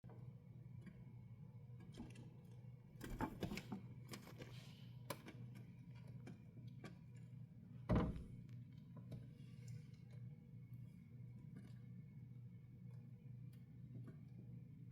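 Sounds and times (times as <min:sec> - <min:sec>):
soft thump: 0:07.9 - 0:08.3.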